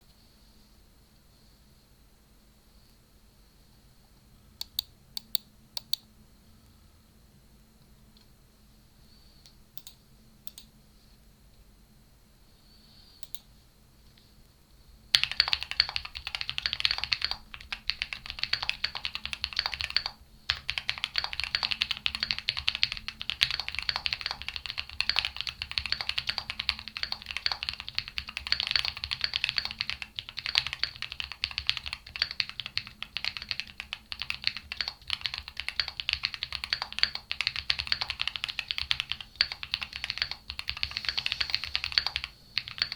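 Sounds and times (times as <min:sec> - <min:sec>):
mechanical keyboard typing: 0:15.1 - 0:42.9.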